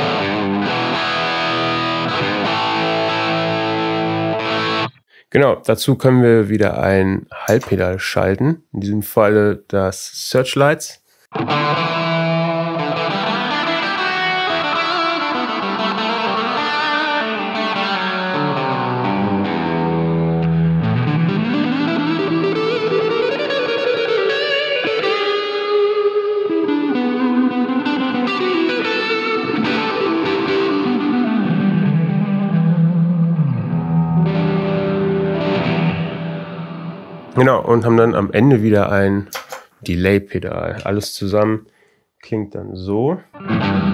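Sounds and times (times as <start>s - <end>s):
overdriven electric guitar: 0.0s - 5.2s, 11.3s - 37.4s, 43.3s - 43.9s.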